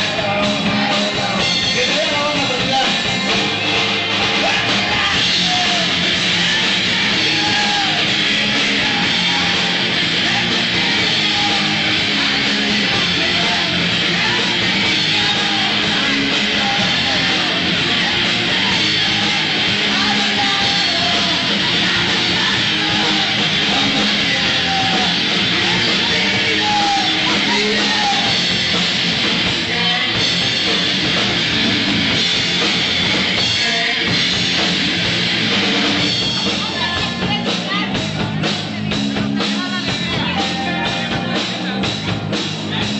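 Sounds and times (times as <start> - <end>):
loud distorted rock band: 0.0 - 42.9.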